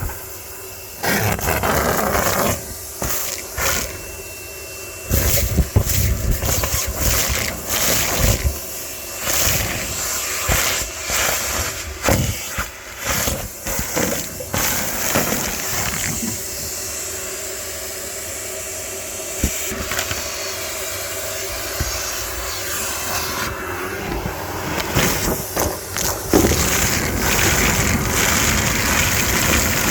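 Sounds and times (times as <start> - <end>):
vacuum cleaner suction: 0.0 - 29.9
knocks and rattles in hose: 5.1 - 16.8, 24.1 - 29.9.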